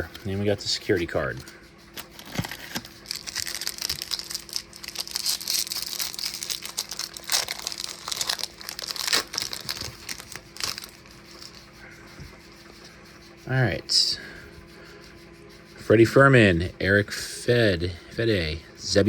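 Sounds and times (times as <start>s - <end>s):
foil wrapper tearing and crinkling: 2.0s - 11.6s.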